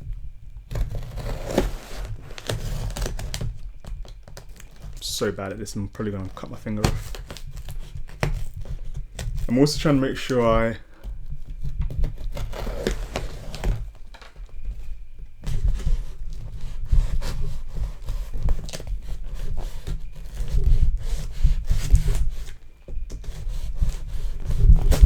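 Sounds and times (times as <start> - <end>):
knife slicing packing tape: 0.7 - 5.0, 6.7 - 9.5, 11.9 - 14.3
tape tearing: 0.7 - 14.5, 23.2 - 25.0.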